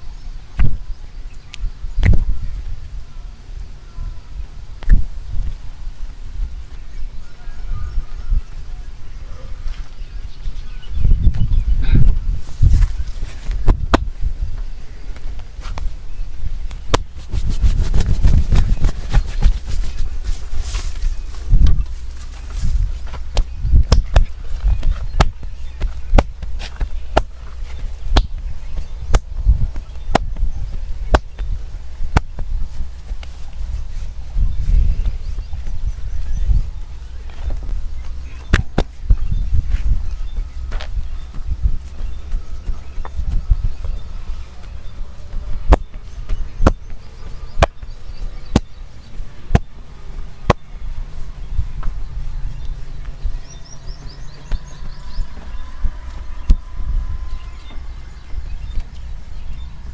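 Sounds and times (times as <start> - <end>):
low background rumble: 0.0 - 59.9
hands slapping the body: 12.7 - 14.2, 16.7 - 21.0, 22.6 - 30.5, 32.1 - 33.6, 38.4 - 39.2, 45.6 - 47.9.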